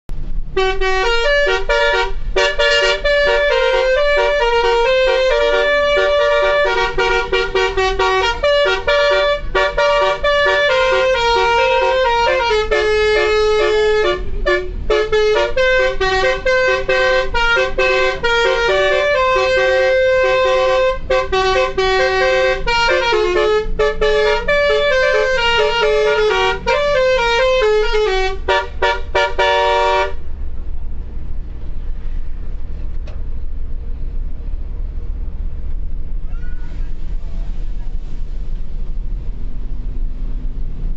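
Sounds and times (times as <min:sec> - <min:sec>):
musical air horn blasts: 0:00.5 - 0:30.2.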